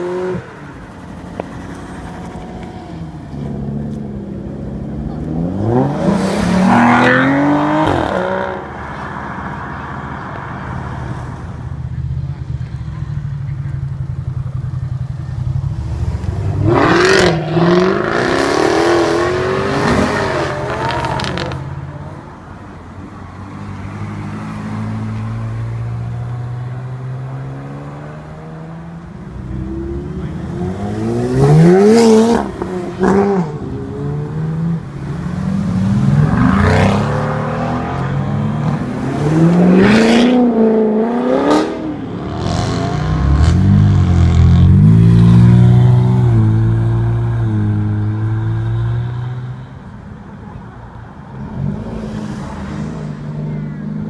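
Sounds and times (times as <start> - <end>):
sports cars revving and accelerating: 0.0 - 11.5, 15.2 - 22.3, 23.5 - 49.8
low engine rumble: 11.4 - 17.9.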